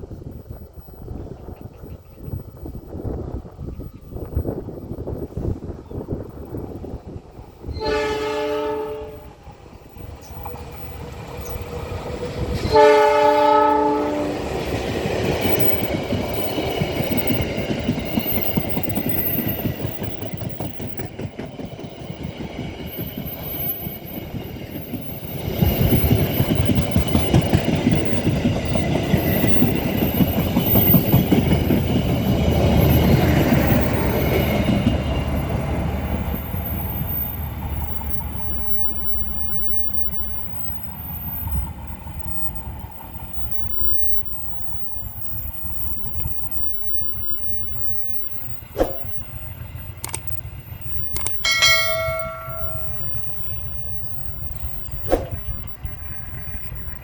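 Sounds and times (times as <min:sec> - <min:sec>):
locomotive horn blasts: 0:07.8 - 0:09.3, 0:12.6 - 0:14.4
train wheels clacking over rails: 0:14.1 - 0:40.6.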